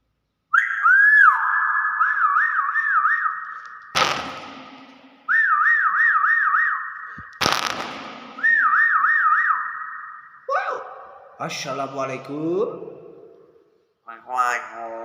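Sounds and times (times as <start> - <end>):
myna bird whistling: 0.5 - 4.6, 5.3 - 7.4, 8.0 - 11.2.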